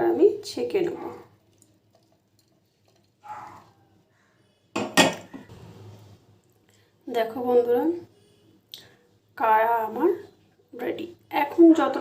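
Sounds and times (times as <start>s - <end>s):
pot clattering against strainer: 4.8s - 5.5s
kitchen utensils clinking: 4.8s - 6.1s.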